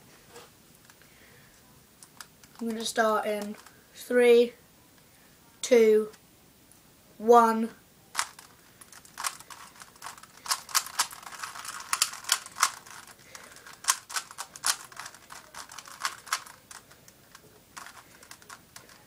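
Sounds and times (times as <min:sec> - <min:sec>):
puzzle cube clicking: 0:03.3 - 0:03.7, 0:08.2 - 0:19.0.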